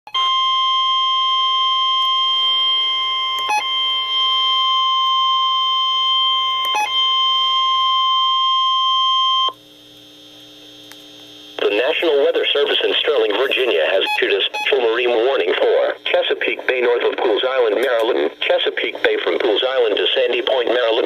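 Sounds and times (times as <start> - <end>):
high-pitched warning alarm tone: 0.1 - 9.5
faint radio hum: 11.6 - 21.0.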